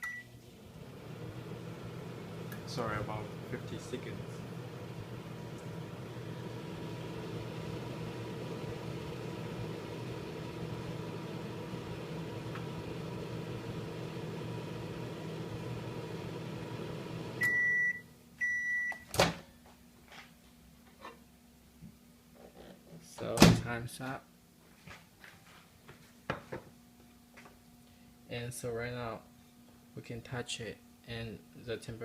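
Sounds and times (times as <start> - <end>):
microwave beeps: 0.0 - 0.4, 17.2 - 19.1
microwave oven humming: 0.0 - 19.4.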